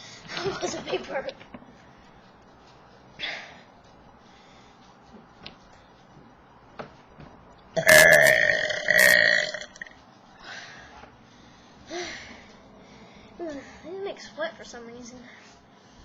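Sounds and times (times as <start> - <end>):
person burping: 7.8 - 9.9.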